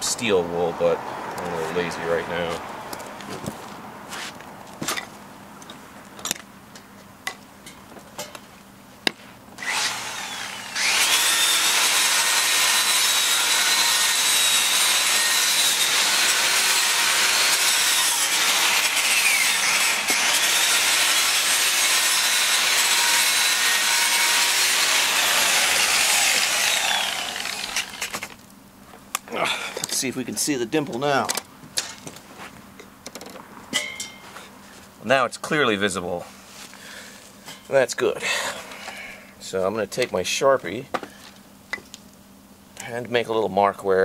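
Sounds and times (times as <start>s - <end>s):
wire brush grinder scraping metal: 9.6s - 28.4s.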